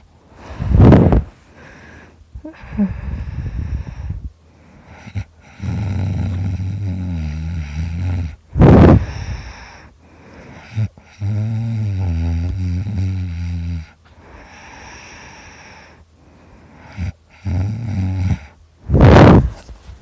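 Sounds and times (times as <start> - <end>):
snort: 4.8 - 16.0, 16.6 - 19.7
loud snoring: 4.9 - 9.7, 10.6 - 14.0, 16.8 - 19.5.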